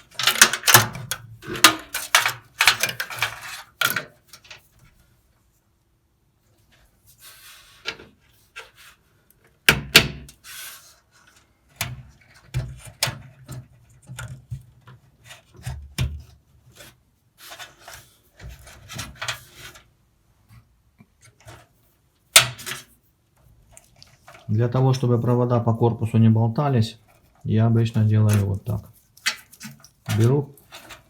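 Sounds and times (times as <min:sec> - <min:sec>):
cables rubbing and scraping: 0:23.8 - 0:31.0.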